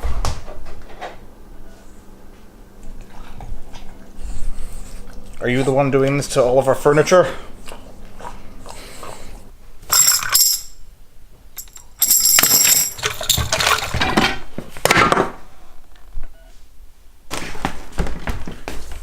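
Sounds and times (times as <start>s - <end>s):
metal clinking and jingling: 9.9s - 10.8s, 11.5s - 14.0s.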